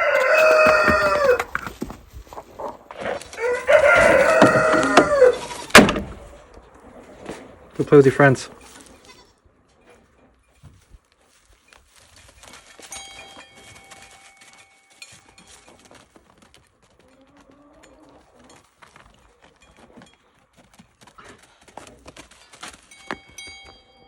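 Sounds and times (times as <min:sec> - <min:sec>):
farm animals shuffling: 0:00.0 - 0:24.0
knocks and rustling: 0:04.0 - 0:07.5.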